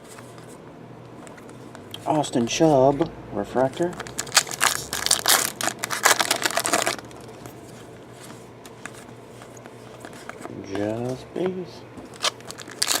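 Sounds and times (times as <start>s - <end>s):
plastic wrapper crinkling: 3.8s - 7.6s, 12.1s - 13.0s.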